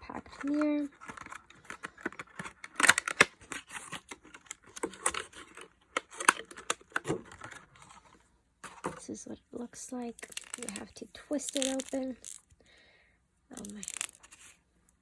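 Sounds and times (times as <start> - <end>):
packaging crinkling and tearing: 0.1 - 8.0, 10.0 - 12.5, 13.5 - 14.6.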